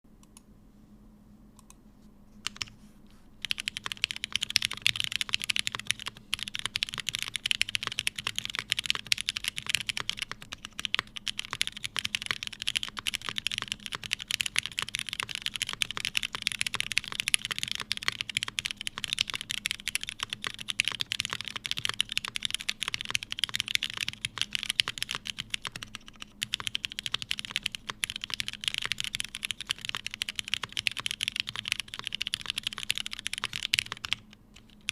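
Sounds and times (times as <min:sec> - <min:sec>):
mechanical keyboard typing: 0:02.4 - 0:02.7, 0:03.4 - 0:34.9.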